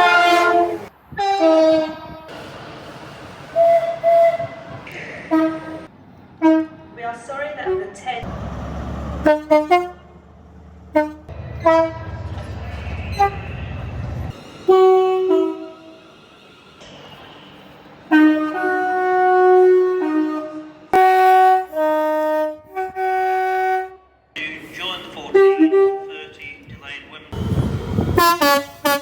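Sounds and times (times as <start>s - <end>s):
train horn blasts: 0.0s - 2.3s, 3.6s - 4.6s, 5.3s - 6.9s, 9.2s - 10.2s, 10.9s - 12.3s, 12.9s - 13.8s, 14.6s - 16.0s, 18.1s - 24.2s, 25.3s - 26.2s, 28.1s - 29.0s.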